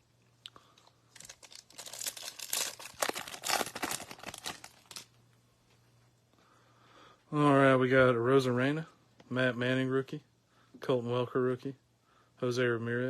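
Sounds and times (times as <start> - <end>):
foil wrapper tearing and crinkling: 1.1 - 5.1.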